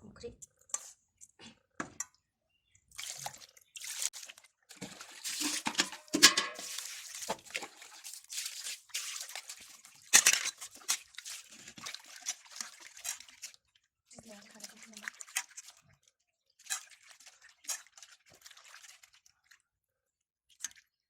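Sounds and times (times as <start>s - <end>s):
hands squelching fish with salt: 2.9s - 5.9s, 6.6s - 16.0s.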